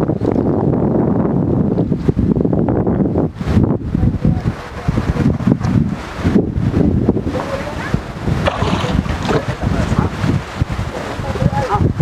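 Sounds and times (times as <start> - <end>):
wind buffeting microphone: 0.0 - 12.0
faint voices: 4.0 - 5.5, 7.3 - 12.0.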